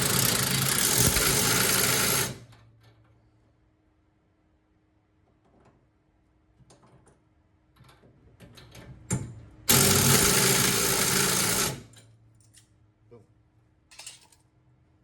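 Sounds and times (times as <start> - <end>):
power tool driving a bolt: 0.0 - 2.4, 9.7 - 12.0
clicks of parts being handled: 13.9 - 14.5.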